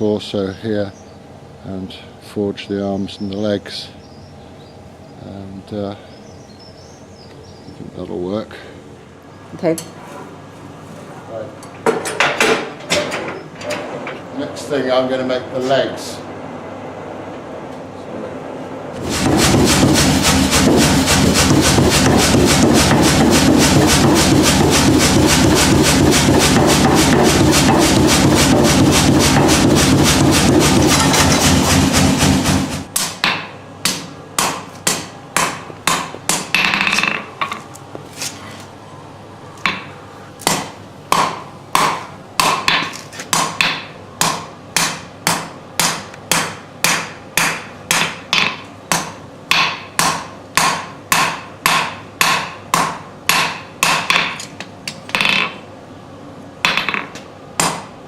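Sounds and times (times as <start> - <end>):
power hammer blows on steel: 19.0 - 33.0.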